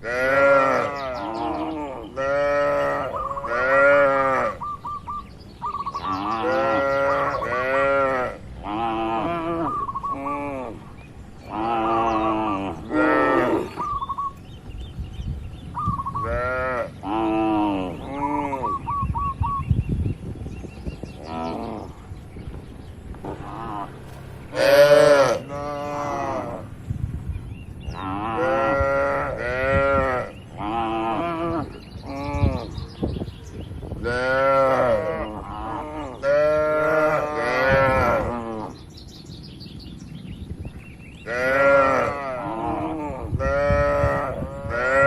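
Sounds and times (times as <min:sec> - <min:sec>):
cattle mooing: 0:00.0 - 0:04.6, 0:06.0 - 0:10.8, 0:11.5 - 0:13.8, 0:23.3 - 0:26.7, 0:34.1 - 0:38.8, 0:41.3 - 0:45.0.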